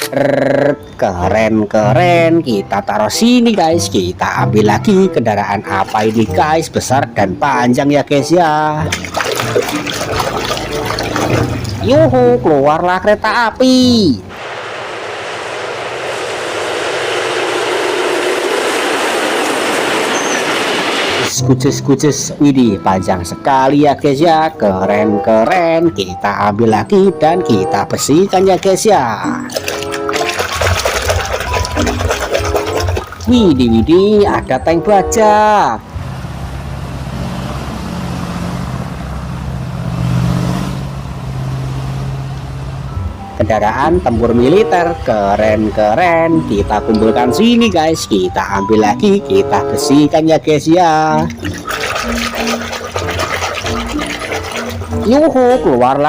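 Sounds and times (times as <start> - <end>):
water spraying: 8.8 - 11.9, 14.3 - 21.3, 29.4 - 33.8, 51.1 - 55.7
low engine rumble: 14.4 - 21.3, 35.5 - 45.6.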